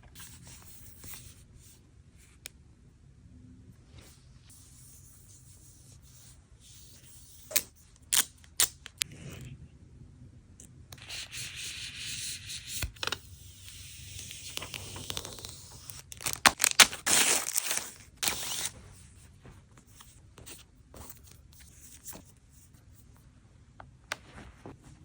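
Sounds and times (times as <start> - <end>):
plastic packaging tearing and crinkling: 14.2 - 18.8.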